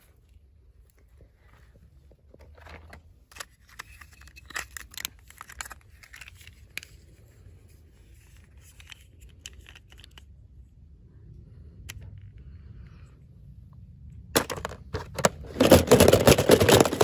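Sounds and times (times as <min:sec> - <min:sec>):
packaging rustling and crinkling: 0:14.4 - 0:17.0.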